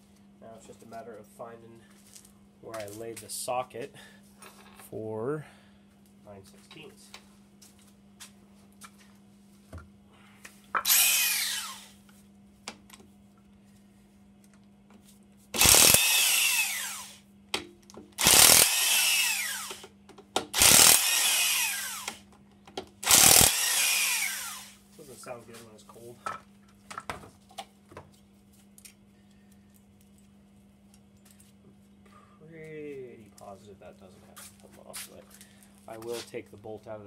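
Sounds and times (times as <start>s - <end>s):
impact wrench whine: 10.7s - 12.0s, 15.6s - 17.2s, 18.2s - 22.3s, 23.0s - 24.8s.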